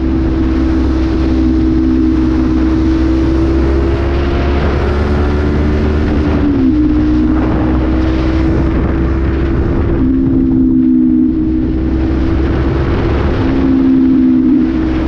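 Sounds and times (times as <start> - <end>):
motorcycle engine running: 0.0 - 15.0
wind rumble on microphone: 0.0 - 15.0.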